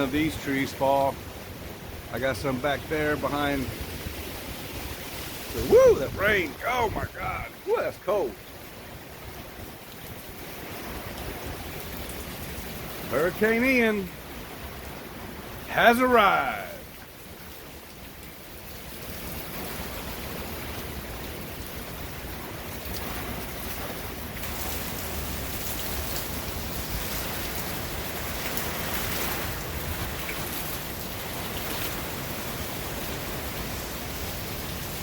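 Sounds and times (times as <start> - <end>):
heavy rain pouring: 0.0 - 35.0
strong wind buffeting: 3.0 - 9.6.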